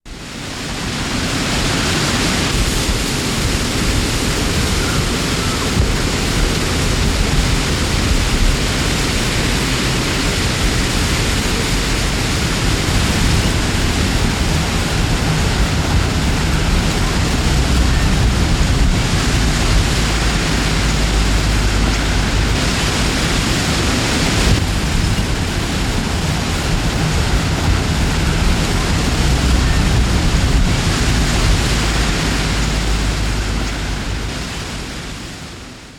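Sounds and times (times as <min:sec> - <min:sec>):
wind rushing through forest: 0:00.0 - 0:35.9.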